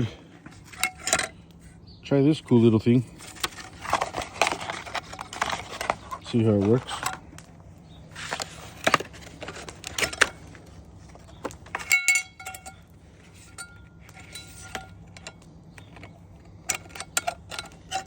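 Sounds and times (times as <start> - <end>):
rustling: 3.0 - 18.0
metal cookware knocking and clinking: 11.8 - 12.9
sharp ringing metal clink: 11.8 - 12.9, 13.5 - 15.4.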